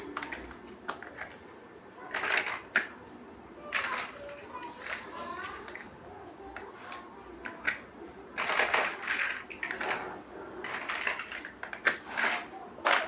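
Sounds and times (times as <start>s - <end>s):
plastic bricks clattering and clicking: 0.1s - 1.4s, 2.1s - 3.0s, 3.7s - 5.9s, 8.4s - 13.0s.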